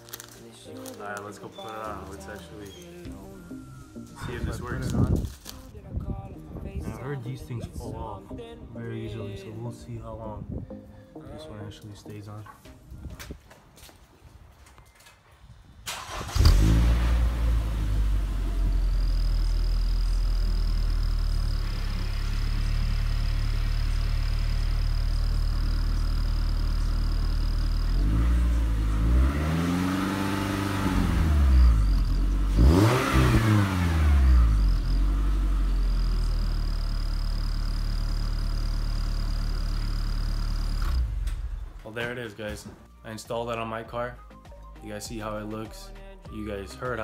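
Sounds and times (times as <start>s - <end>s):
car engine starting and revving: 15.9s - 41.8s.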